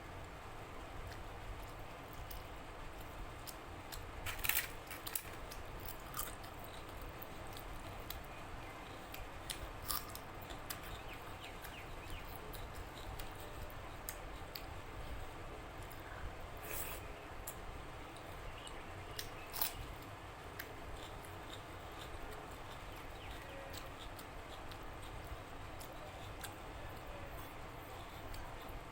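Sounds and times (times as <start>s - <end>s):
person chewing food: 1.1s - 14.7s, 19.1s - 26.5s.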